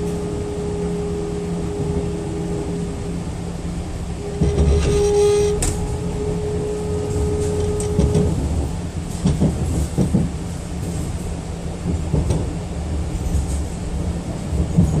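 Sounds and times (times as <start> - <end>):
steady whining tone: 0.0 - 9.0
train rumbling: 0.0 - 15.0.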